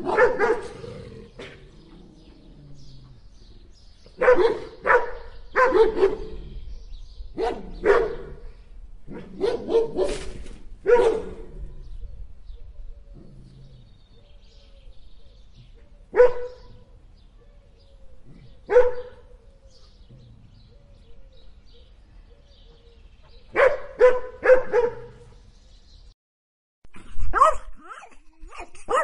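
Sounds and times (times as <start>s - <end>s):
dogs barking: 0.0s - 1.6s, 4.1s - 6.4s, 7.3s - 8.4s, 9.1s - 11.7s, 16.1s - 16.8s, 18.3s - 19.4s, 23.5s - 25.4s, 27.3s - 27.8s.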